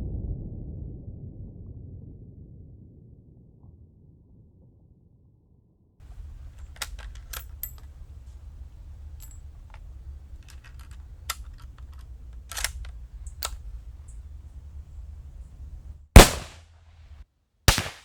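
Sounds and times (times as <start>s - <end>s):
rifle bolt metallic clicks: 6.1s - 16.6s, 17.7s - 18.0s.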